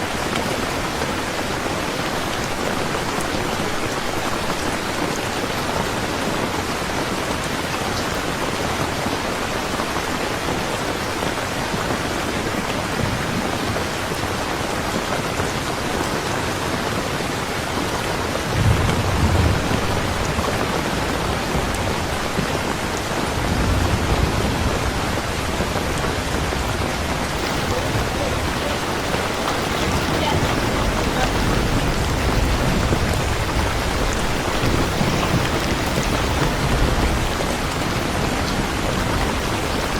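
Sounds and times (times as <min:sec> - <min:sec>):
steady rain falling: 0:00.0 - 0:39.9
low thunder rumbling: 0:18.4 - 0:39.9.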